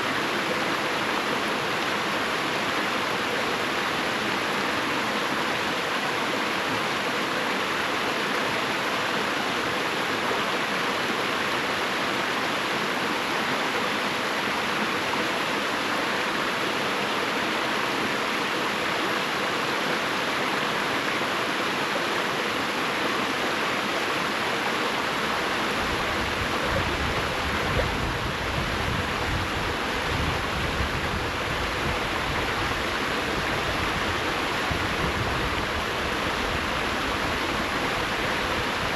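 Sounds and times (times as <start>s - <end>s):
river water rushing over rocks: 0.0s - 38.9s.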